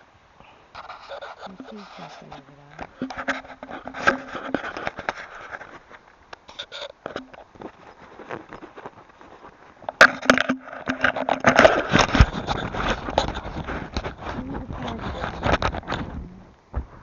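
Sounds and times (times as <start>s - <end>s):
rustling and crackling with clicks: 0.4s - 17.0s
wind rumble on microphone: 11.8s - 17.0s.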